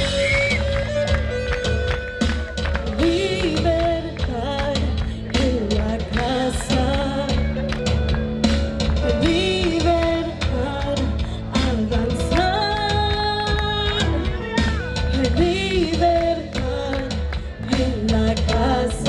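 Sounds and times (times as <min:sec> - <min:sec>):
bass: 0:00.0 - 0:19.0
drum kit beat: 0:00.0 - 0:19.0.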